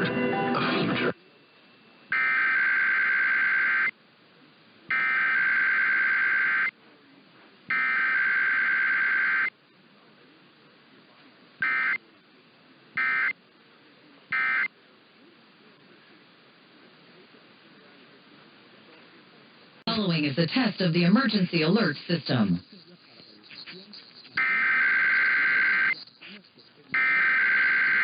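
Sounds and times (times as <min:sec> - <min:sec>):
digital data tone bursts: 0:02.1 - 0:03.9, 0:04.9 - 0:06.7, 0:07.7 - 0:09.5, 0:11.6 - 0:12.0, 0:13.0 - 0:13.4, 0:14.3 - 0:14.7, 0:21.1 - 0:28.0.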